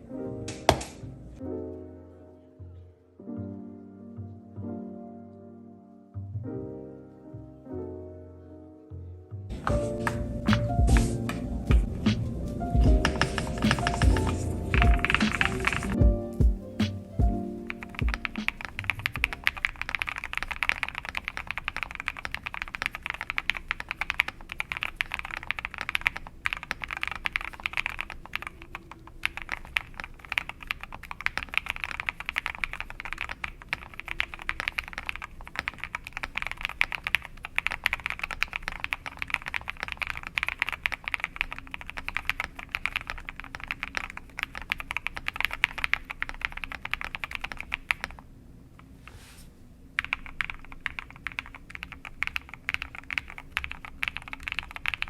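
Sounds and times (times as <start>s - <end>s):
mechanical keyboard typing: 12.8s - 16.0s, 17.2s - 48.2s, 50.0s - 55.0s.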